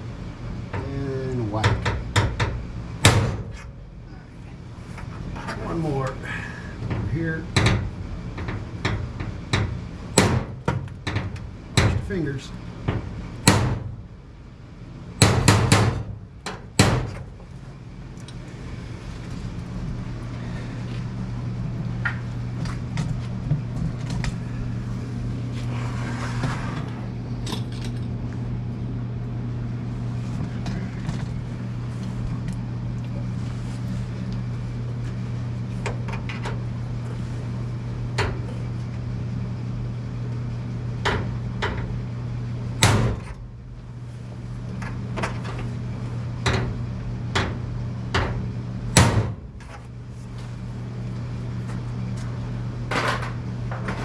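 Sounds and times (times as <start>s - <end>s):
sharp clicks and knocks: 6.9s - 12.1s.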